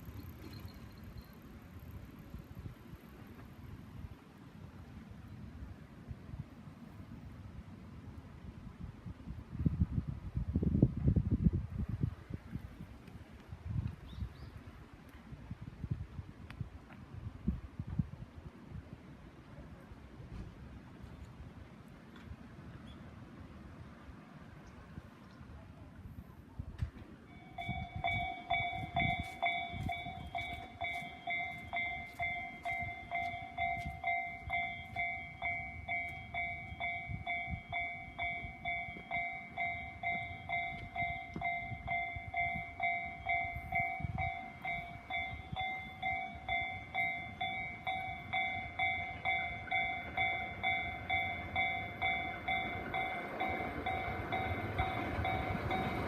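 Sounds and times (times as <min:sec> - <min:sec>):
train rumble: 0:14.8 - 0:56.0
level crossing bell ringing: 0:27.3 - 0:56.0.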